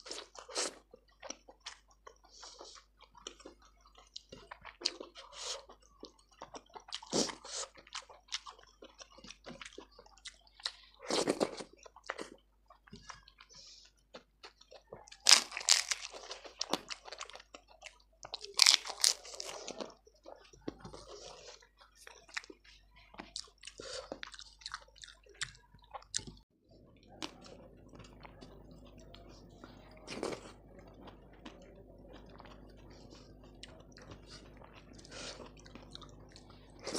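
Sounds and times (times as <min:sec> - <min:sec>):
crisp food crunching: 0:00.0 - 0:26.4, 0:27.0 - 0:36.9
wet chewing: 0:00.0 - 0:36.9
faint steady hum: 0:26.6 - 0:36.9.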